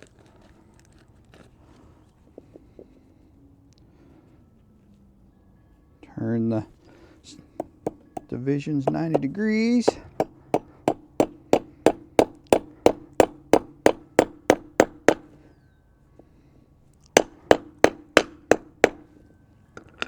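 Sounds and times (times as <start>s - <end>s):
hammer striking metal: 7.6s - 15.4s, 17.2s - 19.1s.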